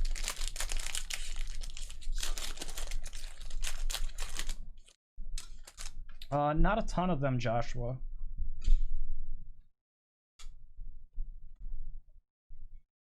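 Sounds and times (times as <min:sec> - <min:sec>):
cards clicking and rustling: 0:05.4 - 0:05.9.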